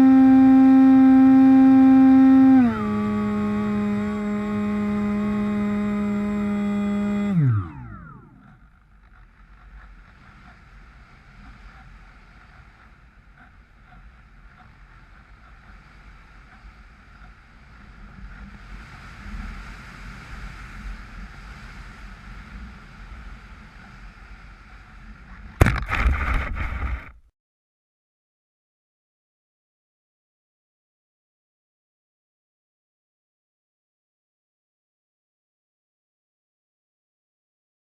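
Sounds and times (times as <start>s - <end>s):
electric motor whine: 0.0s - 9.3s
wind noise: 9.6s - 27.2s
plane landing thump: 25.6s - 27.2s
rough touchdown noise: 25.6s - 27.2s.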